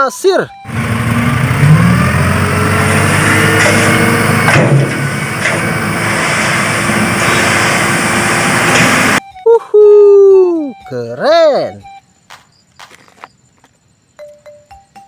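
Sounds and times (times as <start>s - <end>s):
truck engine running: 0.5s - 9.2s.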